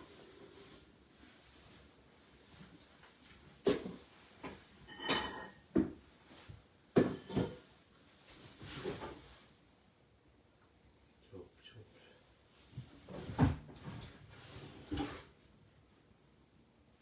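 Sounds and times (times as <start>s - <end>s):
household knocks and clunks: 3.6s - 6.0s, 6.9s - 7.7s, 12.8s - 15.3s.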